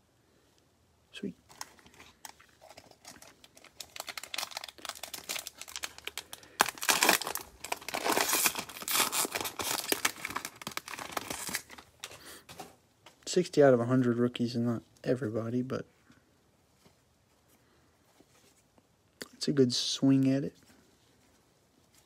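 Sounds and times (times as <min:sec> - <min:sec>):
cellophane wrapper crinkling and tearing: 0:01.4 - 0:12.2.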